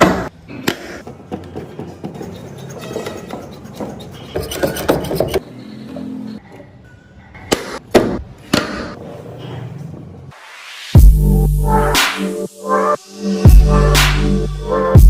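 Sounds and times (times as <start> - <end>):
music playing: 10.4 - 15.0.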